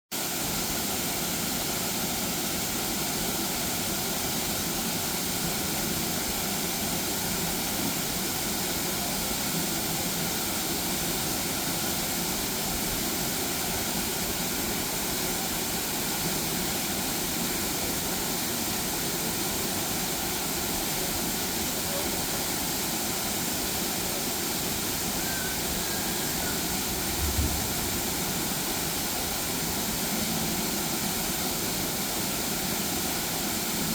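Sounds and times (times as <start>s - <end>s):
waterfall roaring: 0.2s - 33.9s
low thump: 27.2s - 28.0s.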